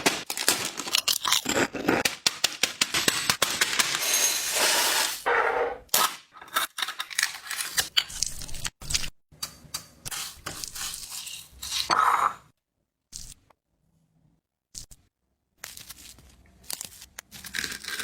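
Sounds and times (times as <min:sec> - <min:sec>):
rustling and tearing handling noise: 0:15.6 - 0:18.0.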